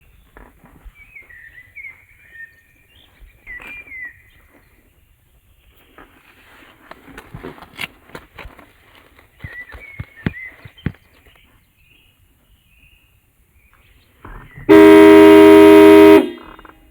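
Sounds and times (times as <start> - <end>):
small bird chirping: 9.3 - 14.7.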